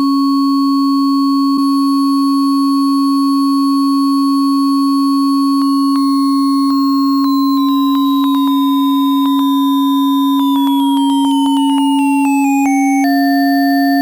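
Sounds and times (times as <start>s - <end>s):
clicks: 5.5s - 14.0s
synthesized gliding tones: 7.2s - 14.0s.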